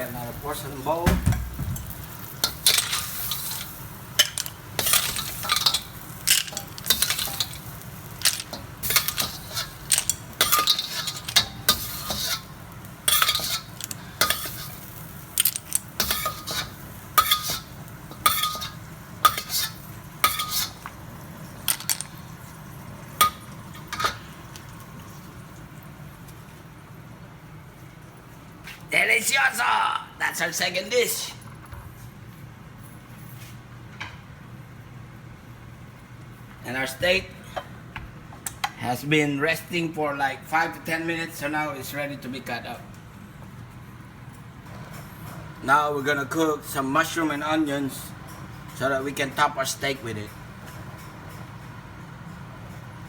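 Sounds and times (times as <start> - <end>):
light sizzle: 0.0 - 33.7, 40.2 - 53.0
metal utensil scraping and clinking: 2.4 - 20.9, 21.6 - 22.2, 23.2 - 24.3.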